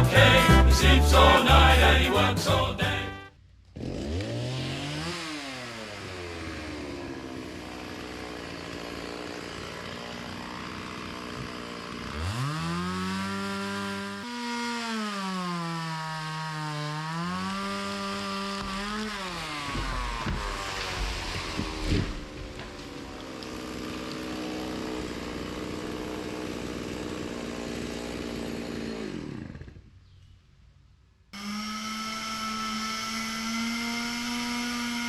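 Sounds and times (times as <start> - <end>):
chainsaw revving: 3.7 - 29.9, 31.4 - 35.0.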